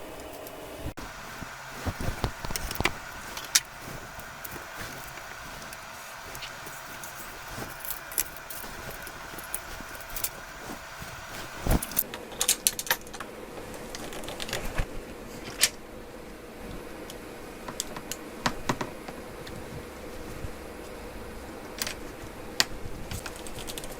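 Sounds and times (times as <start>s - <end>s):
faint steady hum: 0.0s - 23.9s
small tools clicking and clinking: 1.8s - 13.0s.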